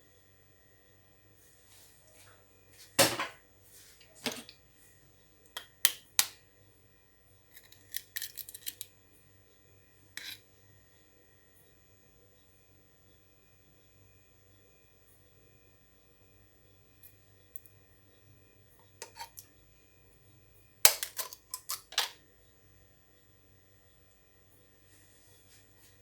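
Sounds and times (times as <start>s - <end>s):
utensils and dishes clinking: 4.2s - 4.5s, 19.0s - 19.4s, 20.9s - 22.2s.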